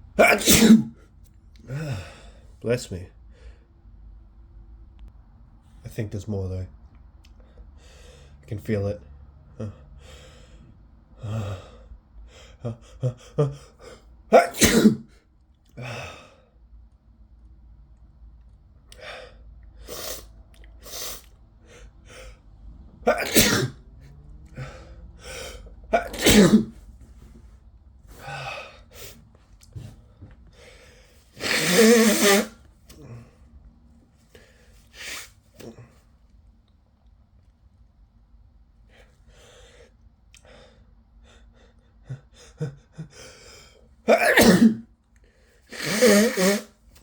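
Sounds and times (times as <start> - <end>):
man sneezing: 0.2 - 1.0, 12.7 - 15.1, 19.8 - 21.3, 23.1 - 23.8, 24.6 - 26.8, 28.1 - 29.2, 31.4 - 33.3, 35.0 - 36.0, 42.1 - 44.9, 45.7 - 46.8
gasping in-breaths: 24.5 - 25.9.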